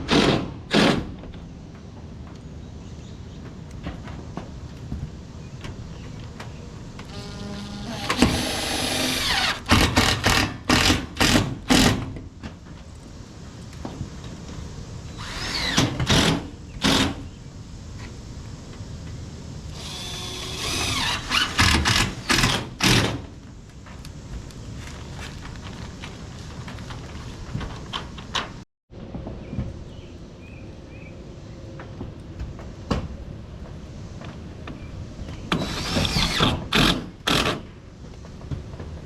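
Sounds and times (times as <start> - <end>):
power drill driving screws: 7.1 - 12.0, 15.2 - 17.2, 19.8 - 23.2, 35.5 - 37.6.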